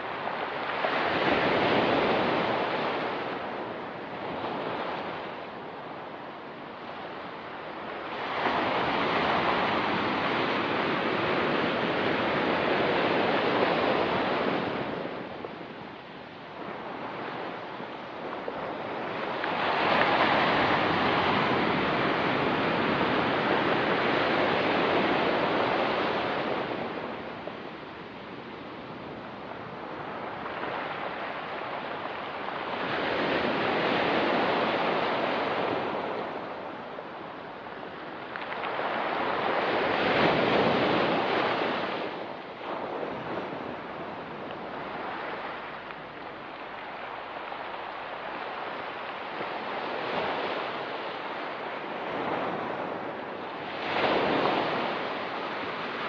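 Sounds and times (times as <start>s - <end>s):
waves breaking on shore: 0.0s - 56.0s.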